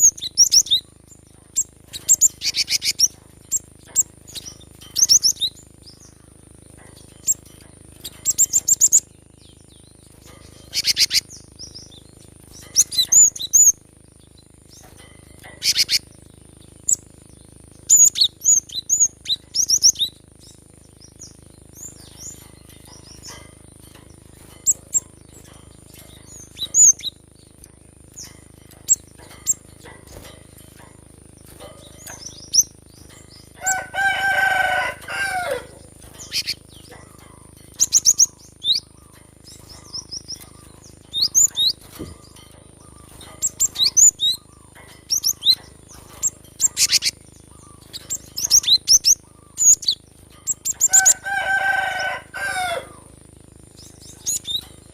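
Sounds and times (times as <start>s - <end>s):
bird chirping high: 0.0s - 54.9s
rooster crowing: 33.6s - 36.4s, 50.8s - 53.2s.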